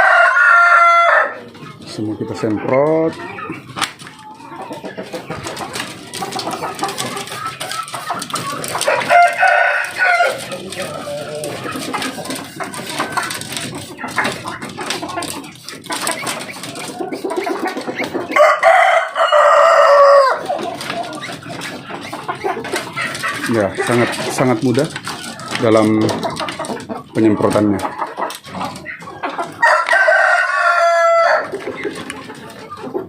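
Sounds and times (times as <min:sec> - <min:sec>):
rooster crowing: 0:00.0 - 0:01.5, 0:08.8 - 0:11.3, 0:18.4 - 0:20.4, 0:29.6 - 0:31.5
chickens clucking: 0:00.0 - 0:33.0.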